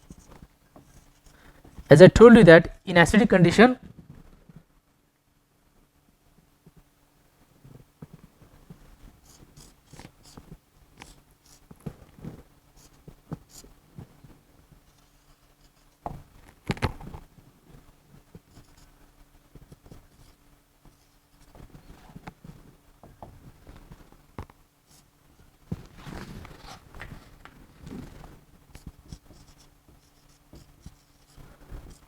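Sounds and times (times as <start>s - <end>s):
pen scratching on paper: 9.1s - 11.7s, 12.8s - 13.7s, 18.5s - 18.9s, 19.7s - 21.7s, 24.9s - 25.1s, 28.0s - 32.0s.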